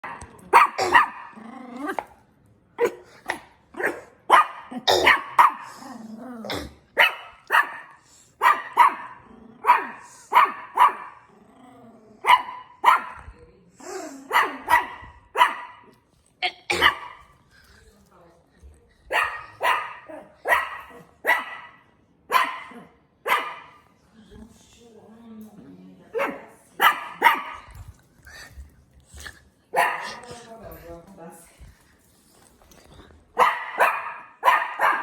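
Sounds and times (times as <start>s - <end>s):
dog barking: 0.0s - 1.4s, 2.8s - 5.7s, 7.0s - 11.3s, 12.2s - 13.3s, 14.3s - 15.9s, 16.7s - 17.3s, 19.1s - 23.8s, 26.2s - 27.7s, 29.7s - 30.3s, 33.4s - 35.0s.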